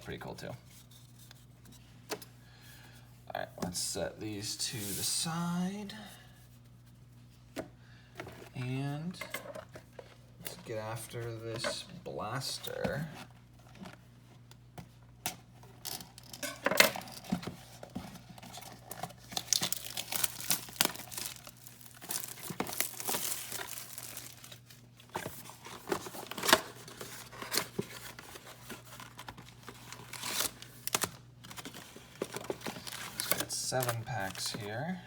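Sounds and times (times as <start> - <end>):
plastic wrap tearing and crinkling: 19.2 - 24.7.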